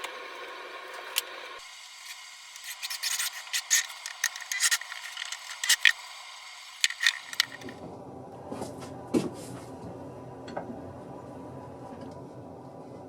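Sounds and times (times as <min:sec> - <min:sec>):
drill bits clinking: 0:01.9 - 0:07.8.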